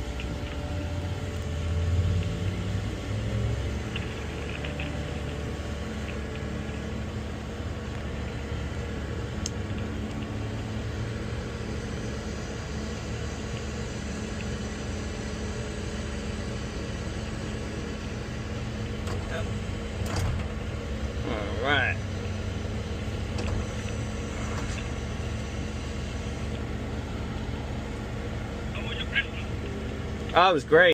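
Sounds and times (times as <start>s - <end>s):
crane diesel engine running: 0.0s - 30.9s.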